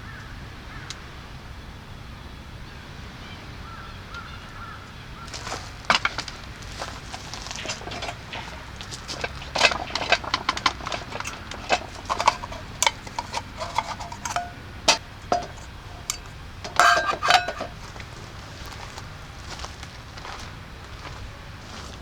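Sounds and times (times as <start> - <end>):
tableware clinking: 5.3 - 18.2.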